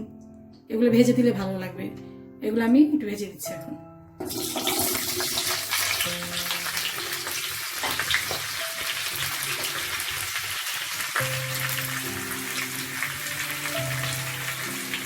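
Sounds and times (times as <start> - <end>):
vegetables sizzling in oil: 4.3 - 15.0.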